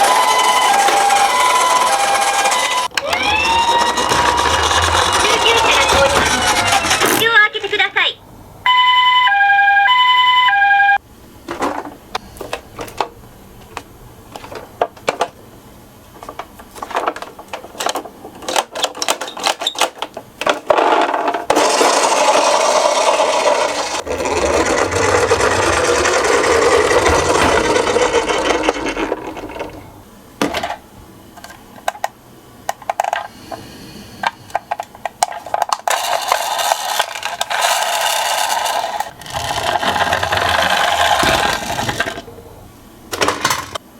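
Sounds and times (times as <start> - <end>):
toy two-tone siren: 0.0 - 7.0, 8.7 - 11.0
toy cars rolling and rattling: 0.0 - 7.3, 16.2 - 29.9, 34.5 - 42.3.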